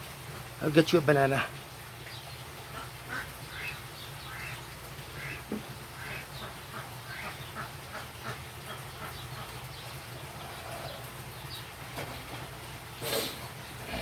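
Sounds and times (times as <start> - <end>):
ducks quacking: 2.7 - 11.1.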